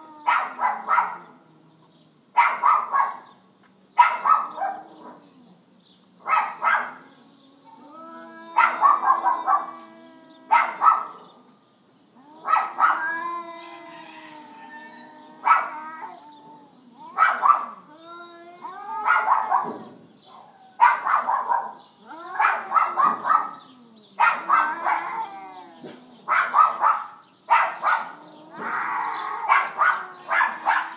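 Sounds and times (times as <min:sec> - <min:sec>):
dog barking: 0:00.3 - 0:01.3, 0:02.4 - 0:03.3, 0:04.0 - 0:05.2, 0:06.2 - 0:07.0, 0:08.6 - 0:09.8, 0:10.5 - 0:11.3, 0:12.4 - 0:13.0, 0:15.4 - 0:15.8, 0:17.2 - 0:17.8, 0:19.0 - 0:21.8, 0:22.4 - 0:25.2, 0:26.3 - 0:28.2, 0:29.4 - 0:30.9.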